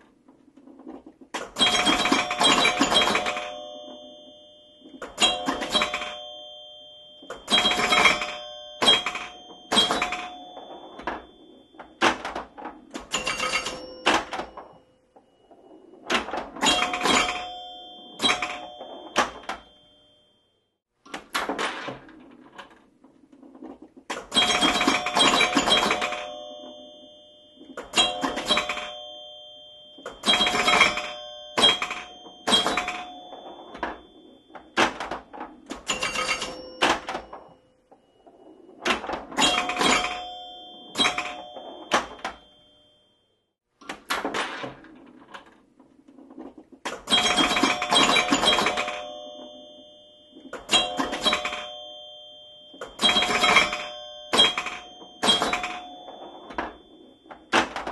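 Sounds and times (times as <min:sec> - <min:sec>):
pinball mechanical clacks: 0:00.0 - 0:20.0, 0:21.1 - 0:43.0, 0:43.8 - 0:57.9
pinball bell tones: 0:00.2 - 0:20.7, 0:21.7 - 0:57.9.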